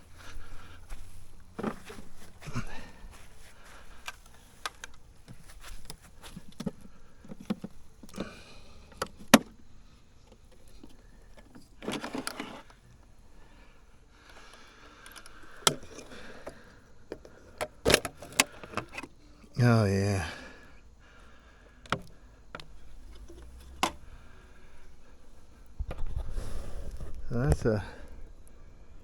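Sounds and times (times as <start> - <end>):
plastic clicks and knocks: 4.1 - 8.2, 8.9 - 9.6, 21.8 - 24.0.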